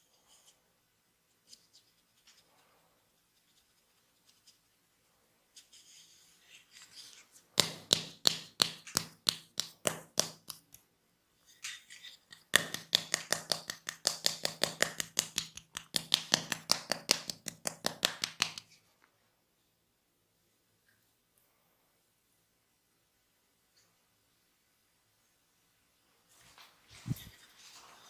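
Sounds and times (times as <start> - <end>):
hands slapping on body: 7.6 - 10.8, 12.5 - 18.7.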